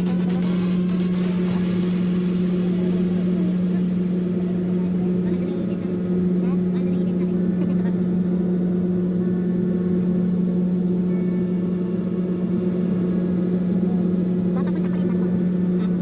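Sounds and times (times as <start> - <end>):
boat engine droning: 0.0 - 16.0.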